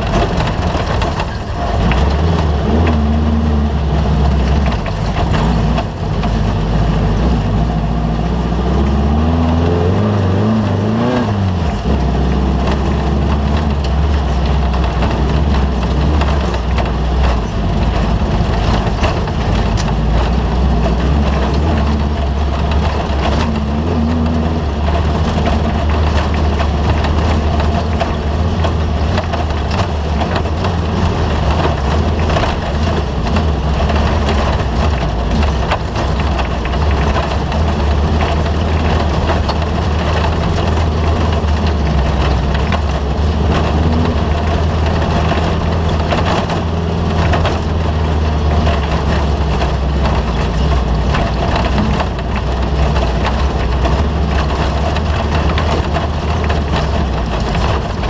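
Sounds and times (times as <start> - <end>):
loud engine drone: 0.0 - 58.0
rattling and clattering: 0.0 - 58.0.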